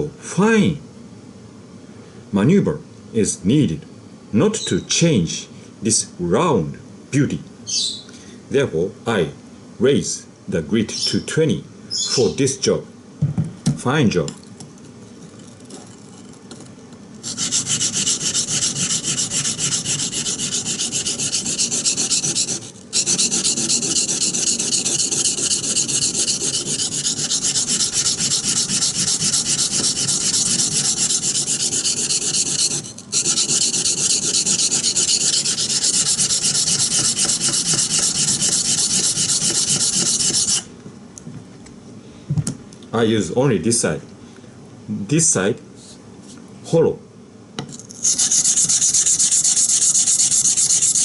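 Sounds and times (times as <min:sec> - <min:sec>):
knife grinding on whetstone: 0:15.3 - 0:16.4, 0:17.2 - 0:40.7, 0:47.7 - 0:51.0.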